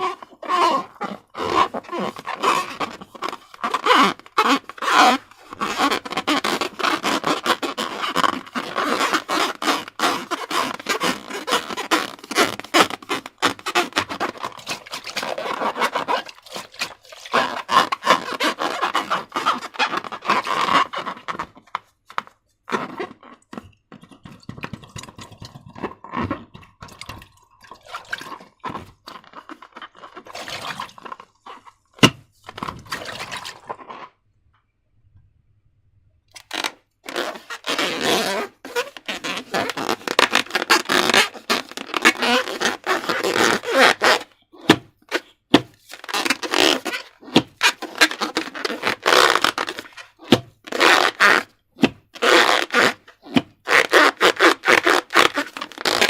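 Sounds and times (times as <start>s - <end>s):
slime squishing and crackling: 22.8s - 34.1s.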